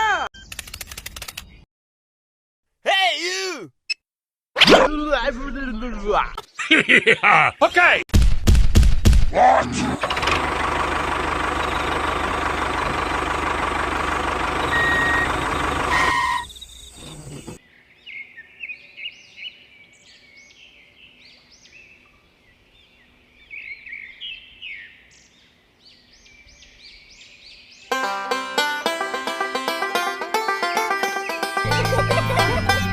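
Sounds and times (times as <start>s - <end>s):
loud machine running: 10.0s - 16.4s
birds chirping: 11.0s - 28.0s.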